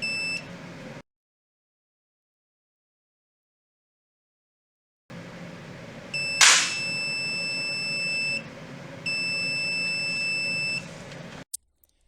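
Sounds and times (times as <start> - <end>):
low background hum: 5.1 - 12.0
sharp click: 6.4 - 6.9.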